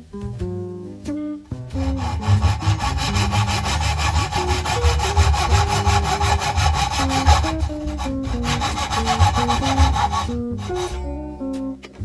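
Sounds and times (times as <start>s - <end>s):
saw cutting through wood: 1.7s - 11.1s.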